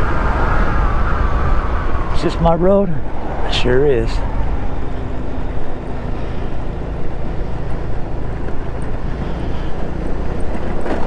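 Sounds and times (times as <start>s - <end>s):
wind rushing over microphone: 0.0s - 10.9s
scooter engine running: 4.9s - 11.0s.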